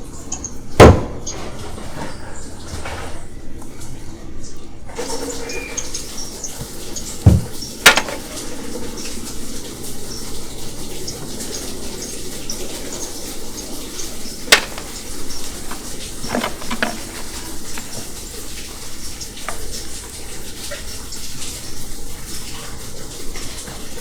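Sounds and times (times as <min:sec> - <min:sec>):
tap water running into sink: 0:04.9 - 0:24.0
dishes and cutlery clinking: 0:06.6 - 0:08.7, 0:13.6 - 0:20.9.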